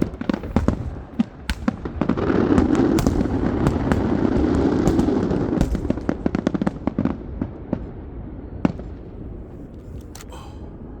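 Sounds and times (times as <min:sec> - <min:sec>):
fireworks crackling and banging: 0:00.0 - 0:09.3.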